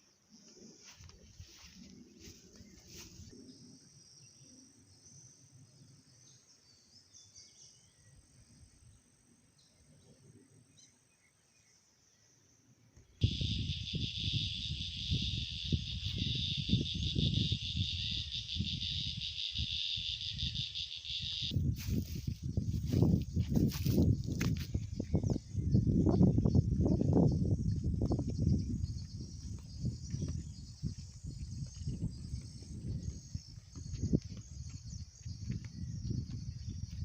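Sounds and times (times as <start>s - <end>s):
insects chorus shrill buzzing: 13.2s - 25.1s
low rumble on microphone: 21.5s - 37.0s.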